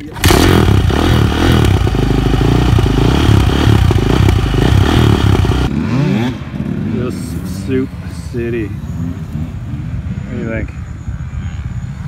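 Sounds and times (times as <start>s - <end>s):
dirt bike engine running: 0.0s - 8.0s.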